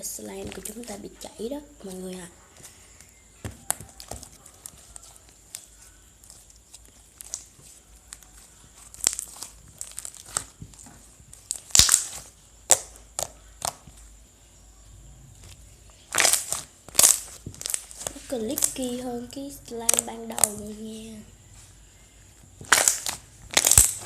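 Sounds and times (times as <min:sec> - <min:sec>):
slime squeezed popping: 0:08.8 - 0:10.6, 0:11.3 - 0:13.9, 0:16.1 - 0:18.8, 0:22.6 - 0:24.0.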